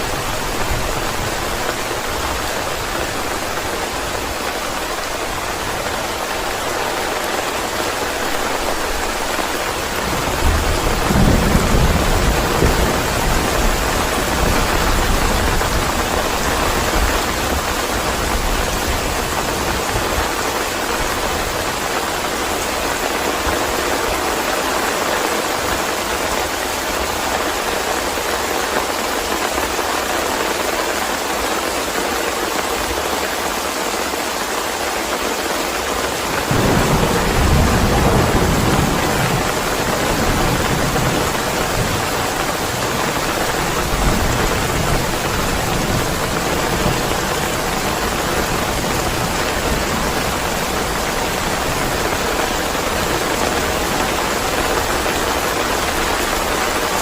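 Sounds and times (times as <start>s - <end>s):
rain hiss: 0.0s - 57.0s
thunder rumbling: 7.8s - 20.4s, 36.3s - 57.0s.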